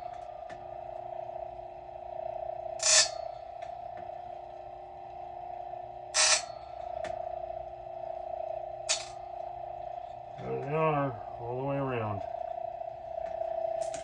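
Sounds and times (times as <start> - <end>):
grinder motor hum: 0.0 - 14.0
grinding stone hissing on chain: 2.8 - 3.1.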